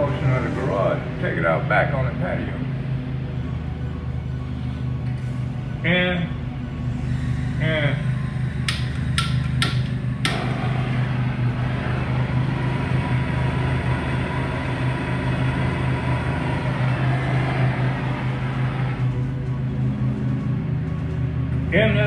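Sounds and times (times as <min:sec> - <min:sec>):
engine idling: 0:07.1 - 0:19.3
sharp clicks: 0:08.7 - 0:10.4.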